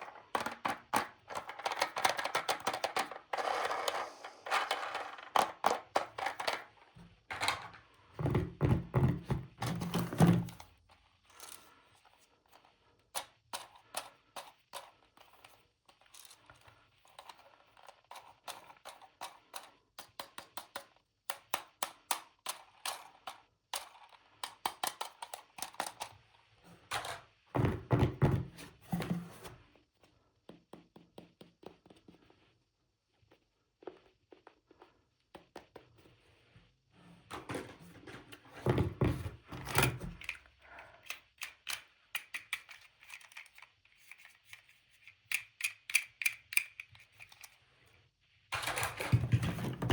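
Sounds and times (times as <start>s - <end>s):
toy pieces clicking and tapping: 0.0s - 3.9s, 17.9s - 26.1s, 41.0s - 47.6s.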